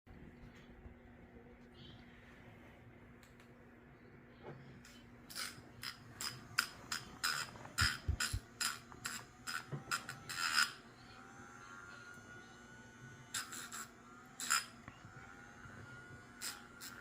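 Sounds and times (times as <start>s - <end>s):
nail file rasping: 5.3s - 10.8s, 13.3s - 14.7s, 16.3s - 17.0s.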